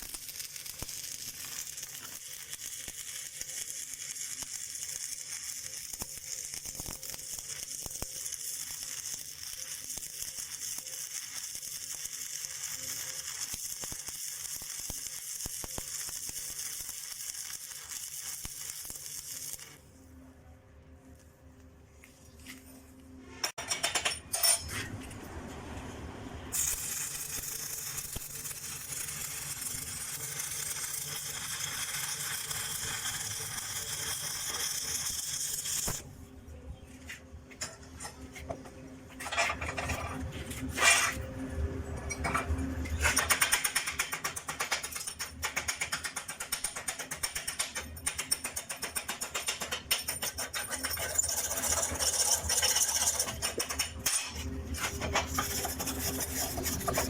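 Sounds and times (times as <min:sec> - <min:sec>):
welding arc crackling and hissing: 0:00.0 - 0:19.9, 0:26.5 - 0:36.0, 0:51.0 - 0:57.0
sharp strokes on metal: 0:50.3 - 0:57.0.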